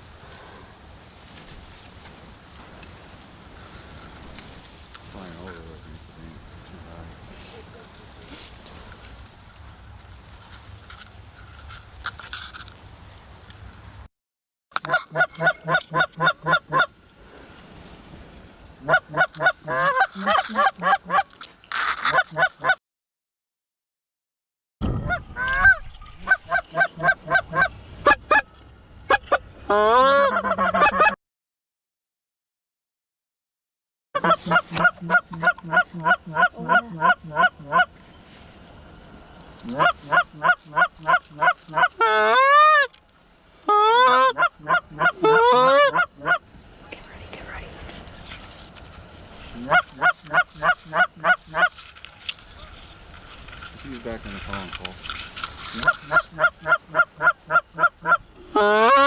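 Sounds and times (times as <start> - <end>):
goose honking: 14.8 - 16.9, 18.8 - 22.8, 25.4 - 28.5, 29.1 - 31.2, 34.2 - 37.9, 39.6 - 42.9, 43.6 - 46.4, 49.5 - 51.7, 55.8 - 59.0.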